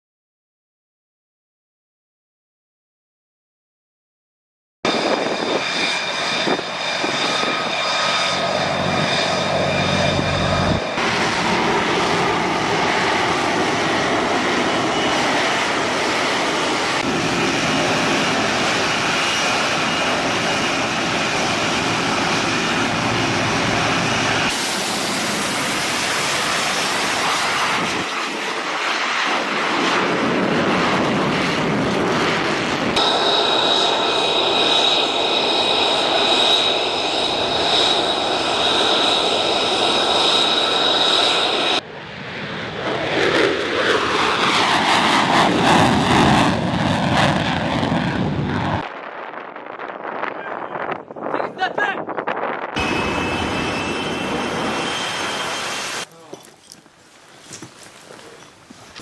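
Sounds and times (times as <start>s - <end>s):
rushing noise: 4.9s - 41.8s, 52.7s - 56.1s
jet engines whining: 4.9s - 56.1s.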